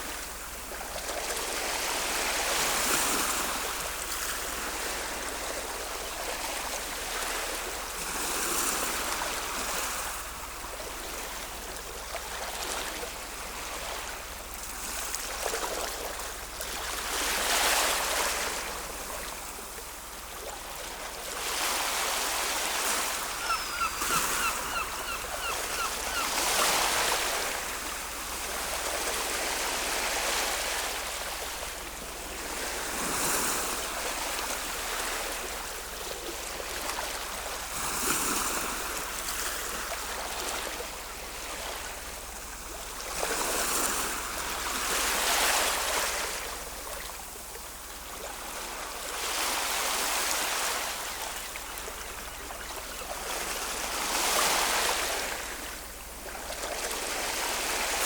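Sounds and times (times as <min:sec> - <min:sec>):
ocean waves washing ashore: 0:00.0 - 0:58.0
quick high chirps: 0:23.4 - 0:26.3.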